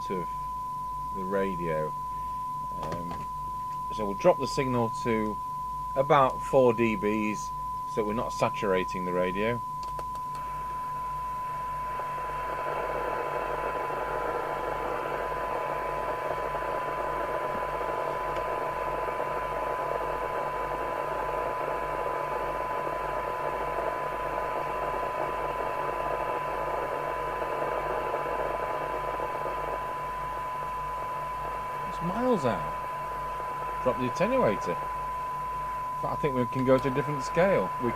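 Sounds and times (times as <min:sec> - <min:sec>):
radio test tone: 0:00.0 - 0:37.9
radio receiver hiss: 0:01.2 - 0:03.3, 0:11.6 - 0:37.9.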